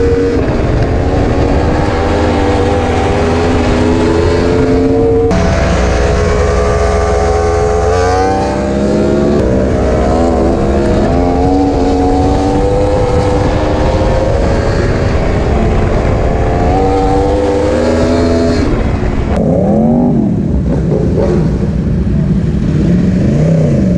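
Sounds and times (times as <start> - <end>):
engine revving hard: 0.0 - 18.8.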